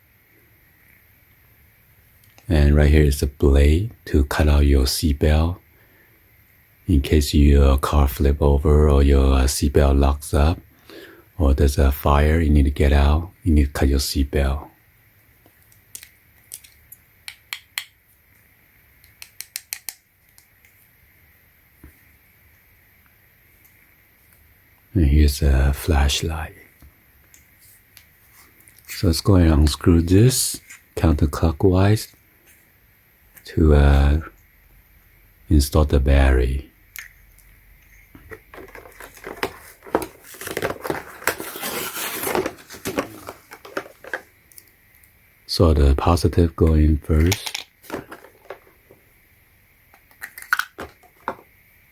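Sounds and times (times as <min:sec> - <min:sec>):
clicks and taps of handheld tool: 0:19.0 - 0:20.5
flashlight handling clicks and rustling: 0:38.3 - 0:41.6, 0:42.3 - 0:44.6, 0:47.2 - 0:48.8.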